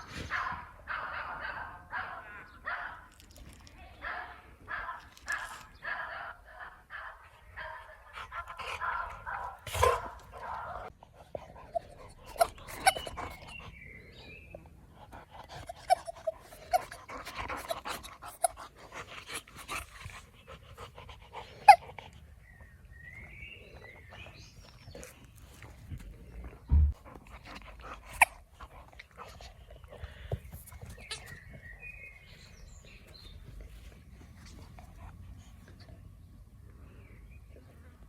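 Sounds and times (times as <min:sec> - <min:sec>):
dog panting: 0:08.0 - 0:22.4
squeaky ball squeaks: 0:12.3 - 0:13.5, 0:15.6 - 0:17.0.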